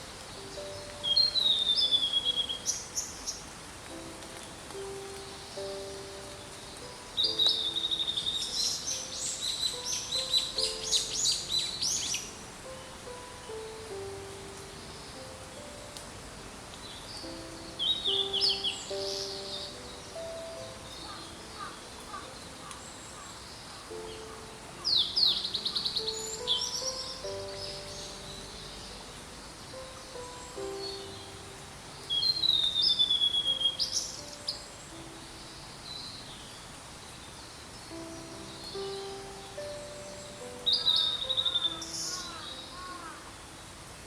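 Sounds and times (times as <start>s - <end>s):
soft background music: 0.0s - 44.0s
bird singing high whistles: 32.1s - 34.0s.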